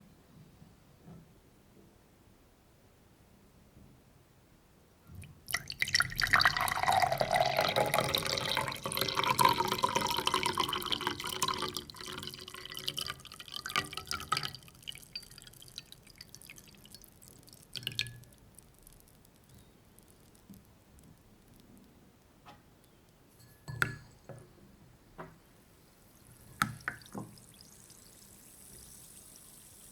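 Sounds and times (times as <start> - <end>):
effervescent tablets fizzing in water: 5.4 - 20.5, 25.8 - 29.9.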